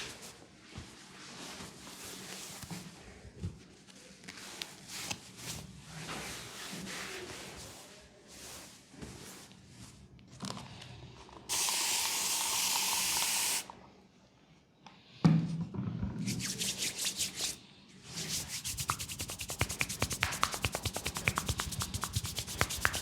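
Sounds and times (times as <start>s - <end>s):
aerosol spray hissing: 11.5s - 13.7s, 18.7s - 23.0s
hands rubbing and striking skin: 16.3s - 17.6s, 18.2s - 23.0s.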